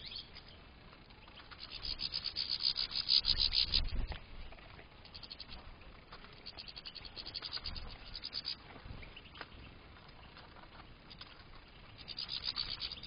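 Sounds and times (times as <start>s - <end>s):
finches twittering: 0.0s - 4.2s, 6.4s - 10.4s, 11.0s - 13.0s.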